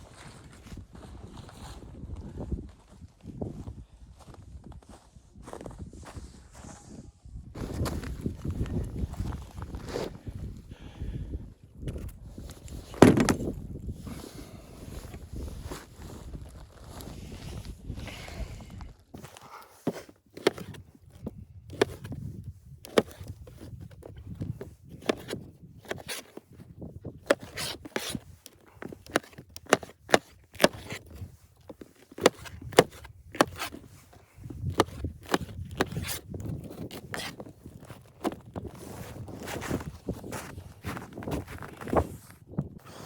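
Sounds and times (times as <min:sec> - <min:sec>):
scraping and rubbing: 0:27.2 - 0:42.3.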